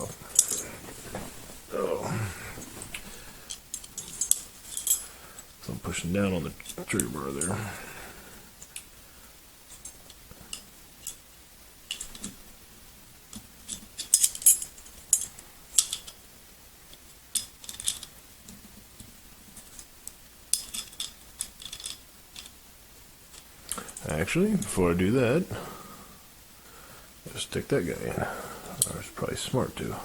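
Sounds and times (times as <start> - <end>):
metal pistol parts clicking: 13.7 - 16.2, 17.3 - 18.1.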